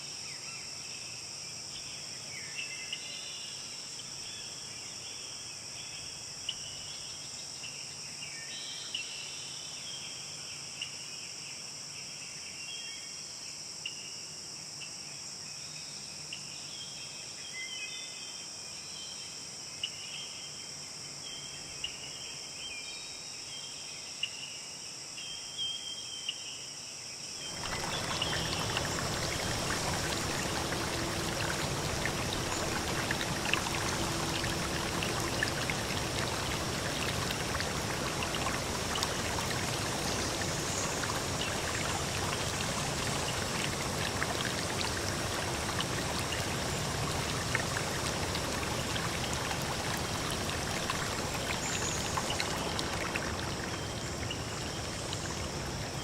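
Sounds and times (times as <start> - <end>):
insect chorus: 0.0 - 56.0
running water: 27.4 - 56.0.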